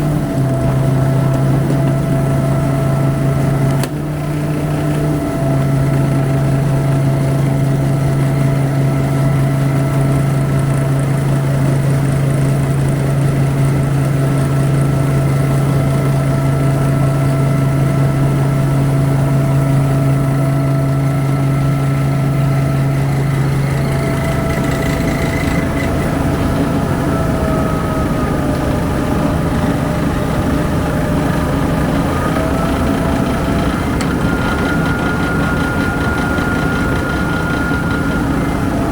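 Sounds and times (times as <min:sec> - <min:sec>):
rice huller humming: 0:13.6 - 0:38.9.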